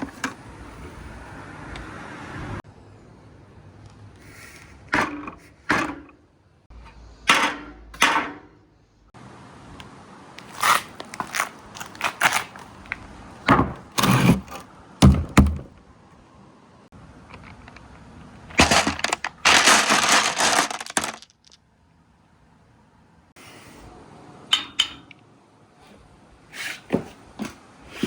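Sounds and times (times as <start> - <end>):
marbles clacking together: 19.5 - 21.6
marbles rolling down a track: 19.5 - 21.6.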